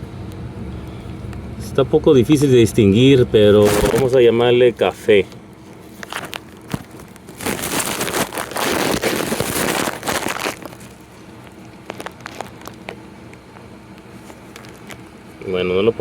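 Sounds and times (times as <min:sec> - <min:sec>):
plastic wiring harness rustling: 0:03.5 - 0:04.4, 0:05.0 - 0:13.0, 0:14.2 - 0:15.1.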